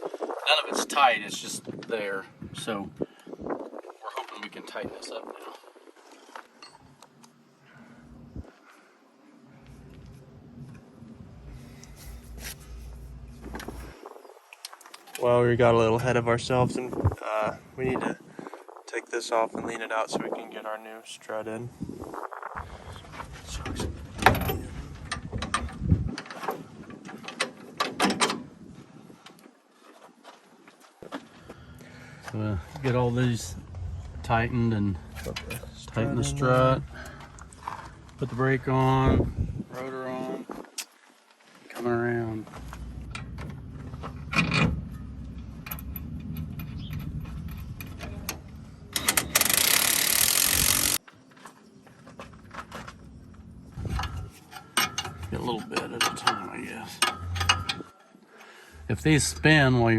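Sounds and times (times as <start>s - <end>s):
low steady rumble: 9.6s - 14.0s, 31.5s - 39.7s, 58.8s - 59.9s
low rumble: 32.8s - 38.2s, 58.8s - 59.9s
metallic clicks and clanks: 44.3s - 51.0s, 53.9s - 58.1s
compressed-air tool hissing: 49.4s - 51.0s.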